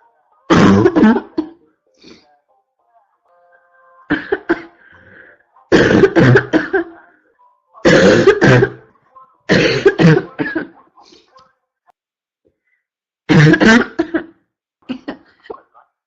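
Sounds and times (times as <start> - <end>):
person barking cough: 0.5 - 1.6, 5.8 - 6.9, 7.8 - 8.8, 9.5 - 10.7, 13.3 - 15.4.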